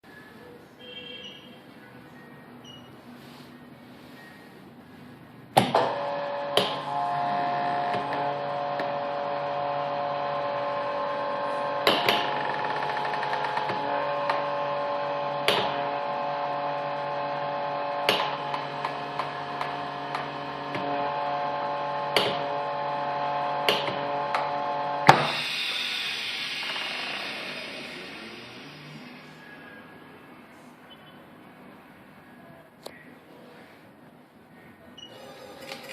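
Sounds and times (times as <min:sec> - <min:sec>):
vacuum pump humming: 0:05.6 - 0:29.6.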